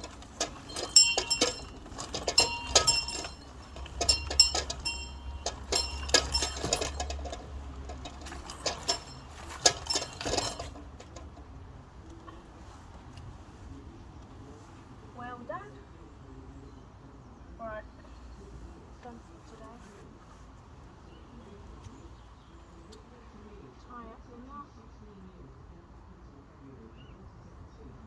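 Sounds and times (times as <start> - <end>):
small hand bell clanging: 0.0 - 10.8.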